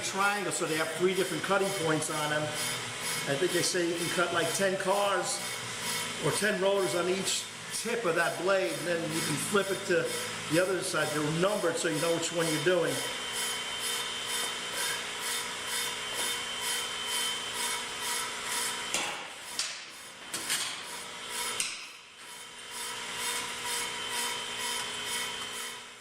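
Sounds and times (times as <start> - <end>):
cutting tip scraping rotor: 0.0 - 19.6.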